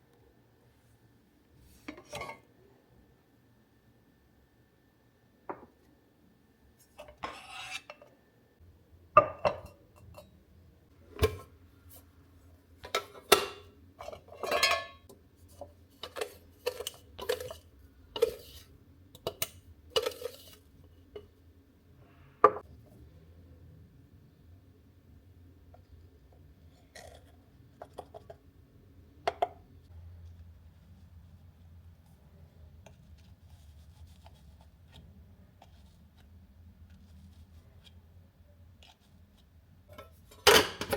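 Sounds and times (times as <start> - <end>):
dishes and cutlery clinking: 1.9 - 2.4, 12.8 - 15.1.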